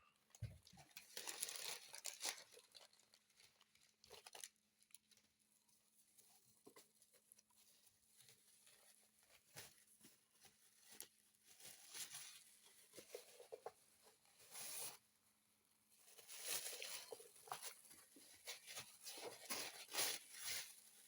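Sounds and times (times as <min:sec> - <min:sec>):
packaging rustling and tearing: 0:00.6 - 0:05.4, 0:16.1 - 0:21.0.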